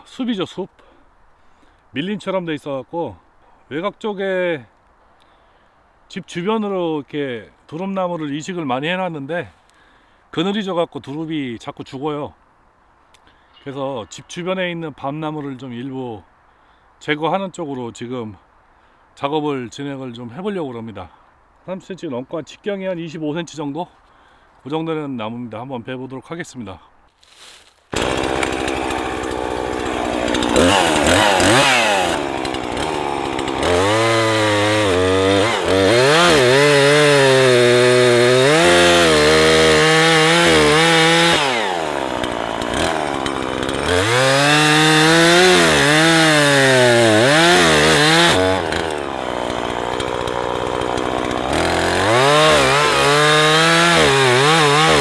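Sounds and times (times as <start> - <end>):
chainsaw cutting tree trunk: 27.9 - 55.0.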